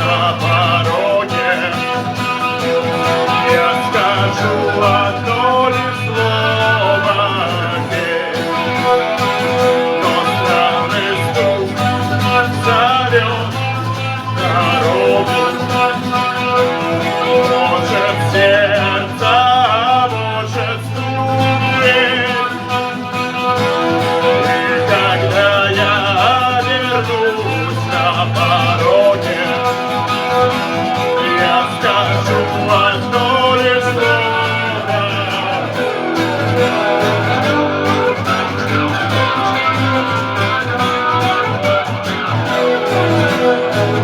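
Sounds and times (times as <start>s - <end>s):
lead guitar melody: 0.0s - 44.0s.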